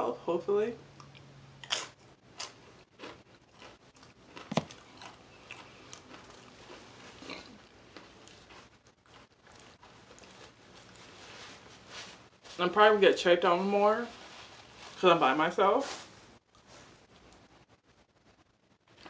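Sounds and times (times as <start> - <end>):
person chewing a sandwich: 1.0 - 12.3.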